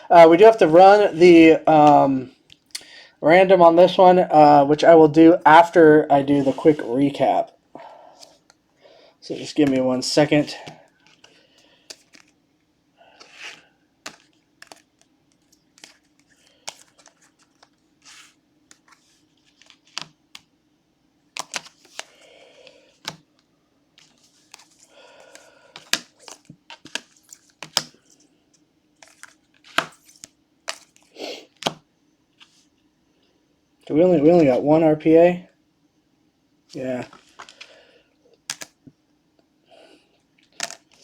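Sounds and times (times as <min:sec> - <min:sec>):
cards rustling: 0:06.3 - 0:07.2, 0:09.3 - 0:12.4, 0:13.1 - 0:20.5, 0:21.3 - 0:31.8, 0:36.7 - 0:37.8, 0:38.5 - 0:38.8, 0:40.4 - 0:41.0
cards tapping and clicking: 0:10.6 - 0:12.3, 0:14.0 - 0:20.5, 0:21.4 - 0:23.4, 0:24.0 - 0:28.1, 0:29.0 - 0:31.8, 0:38.5 - 0:38.8, 0:40.6 - 0:41.0.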